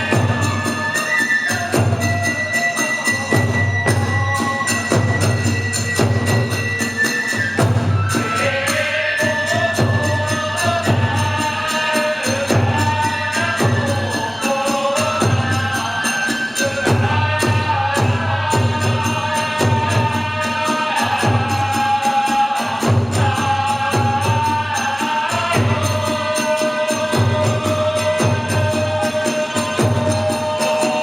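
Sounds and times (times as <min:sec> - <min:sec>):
taiko drum beat: 0:00.0 - 0:01.0, 0:01.7 - 0:08.5, 0:09.2 - 0:14.4, 0:16.8 - 0:31.0
high flute: 0:00.0 - 0:11.0, 0:13.1 - 0:22.6
chanted singing: 0:00.0 - 0:31.0
hand cymbals clashing: 0:00.0 - 0:31.0.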